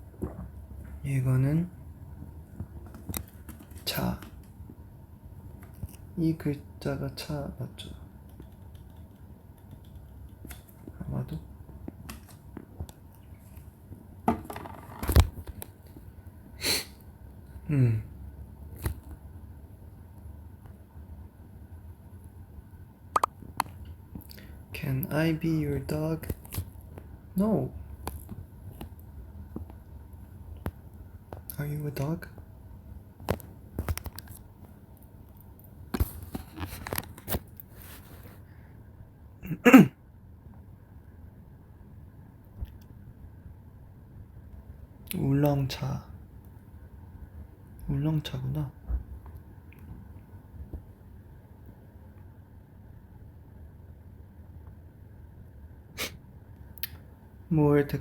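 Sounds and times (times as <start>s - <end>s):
low hum from voice: 0.0s - 1.9s, 2.5s - 4.9s, 5.9s - 8.2s, 10.7s - 12.3s, 16.6s - 18.4s, 31.3s - 32.5s, 39.4s - 40.0s, 45.0s - 46.3s, 47.8s - 50.0s
breathy hiss: 16.6s - 17.0s.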